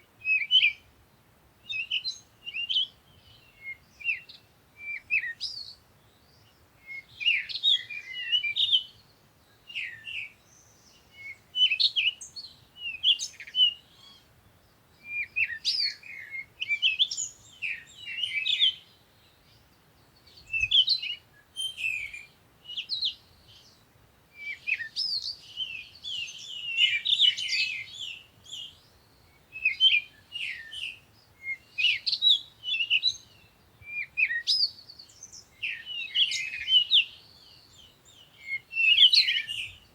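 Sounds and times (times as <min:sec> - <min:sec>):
songbirds chirping and singing: 0:00.1 - 0:39.9.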